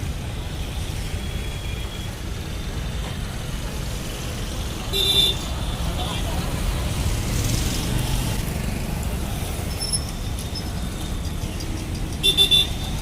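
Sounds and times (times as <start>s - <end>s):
road traffic: 0.0s - 13.0s
vehicle horn beep: 12.2s - 12.9s.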